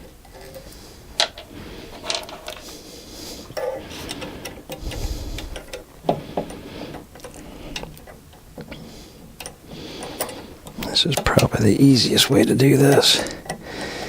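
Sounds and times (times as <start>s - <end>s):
metal parts clicking and knocking: 0.0s - 2.7s, 3.5s - 11.7s.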